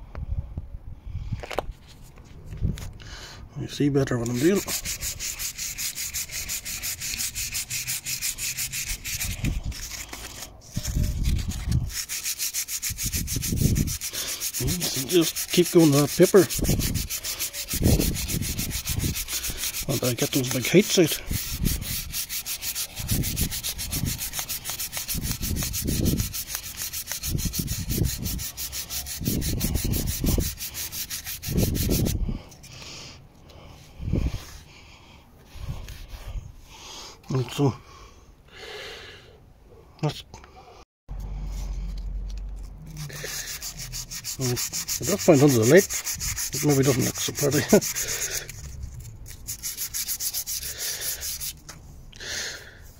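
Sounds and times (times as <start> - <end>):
sandpaper rubbing on metal wheel: 4.0 - 32.2, 42.9 - 51.7.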